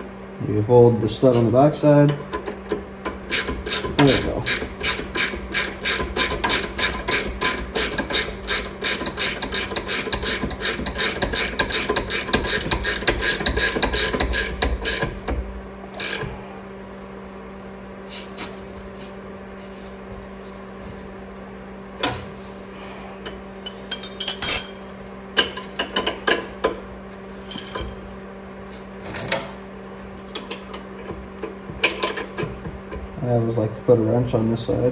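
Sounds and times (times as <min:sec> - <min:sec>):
ratcheting wrench clicking: 0:02.3 - 0:15.2, 0:16.0 - 0:16.4
metal tools clinking: 0:23.7 - 0:25.0, 0:27.4 - 0:28.1.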